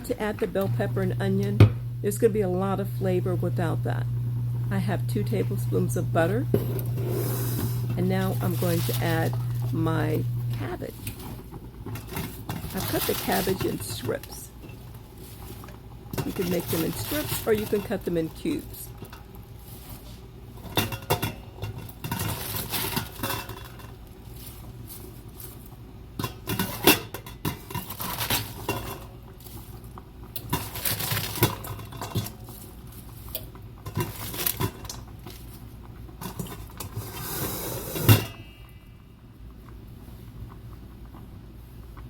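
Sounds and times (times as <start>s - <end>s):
steady low hum: 0.0s - 42.0s
cabbage rustling: 12.3s - 14.4s, 15.0s - 18.8s, 24.0s - 25.8s.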